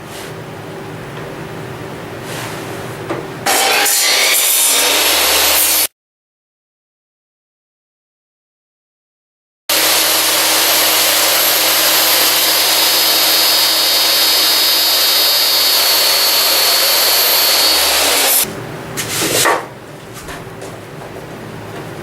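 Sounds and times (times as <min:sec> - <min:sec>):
woodworking power tool whining: 0:03.5 - 0:05.9, 0:09.7 - 0:18.5.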